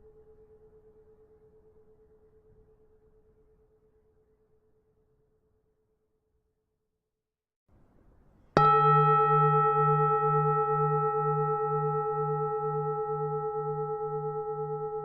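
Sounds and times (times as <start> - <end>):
temple bell ringing: 8.6 - 15.0.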